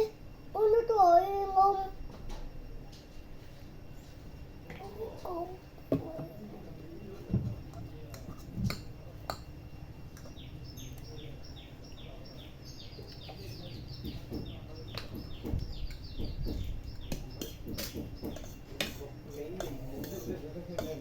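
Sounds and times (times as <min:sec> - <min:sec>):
bird chirping: 0:06.7 - 0:21.0.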